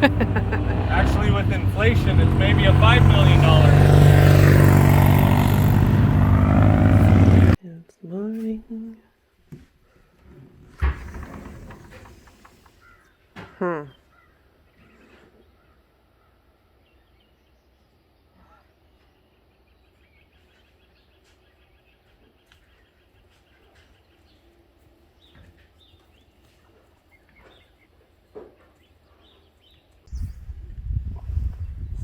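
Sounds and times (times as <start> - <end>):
loud low rumble: 0.0 - 7.6.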